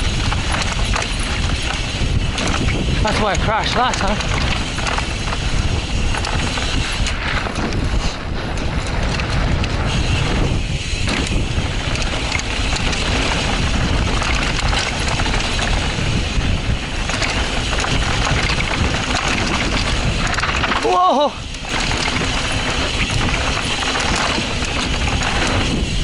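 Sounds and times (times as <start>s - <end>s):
bike rattling over bumps: 0.0s - 26.0s
tyres on loose dirt: 0.0s - 26.0s
wind noise on microphone: 0.0s - 26.0s.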